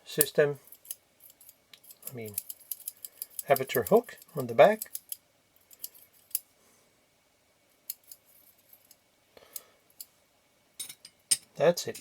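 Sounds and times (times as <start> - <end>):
faint metallic clicks of tools: 0.2 - 6.5, 7.7 - 10.2.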